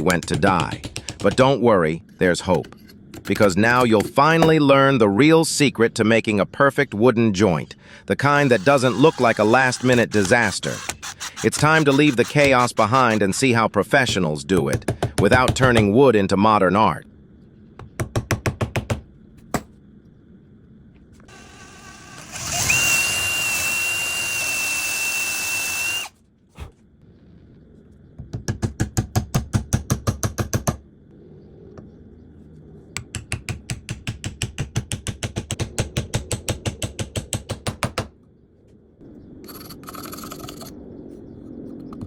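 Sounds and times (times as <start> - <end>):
drill whining: 8.3 - 13.4, 21.3 - 26.1
rapid clicking: 8.4 - 13.5.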